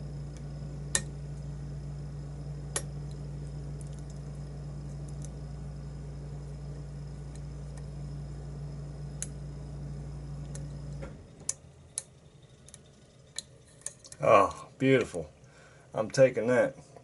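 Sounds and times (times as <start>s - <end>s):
low hum: 0.0s - 16.1s.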